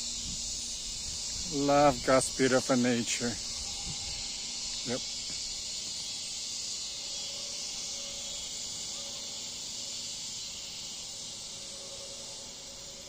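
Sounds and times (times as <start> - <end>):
cicadas buzzing: 0.0 - 13.0.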